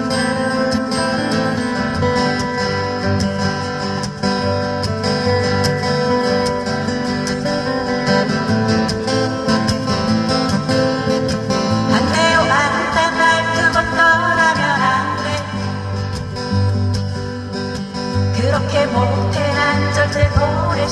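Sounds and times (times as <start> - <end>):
acoustic guitar strumming: 0.0 - 20.9
person singing: 11.8 - 16.1, 18.2 - 20.9.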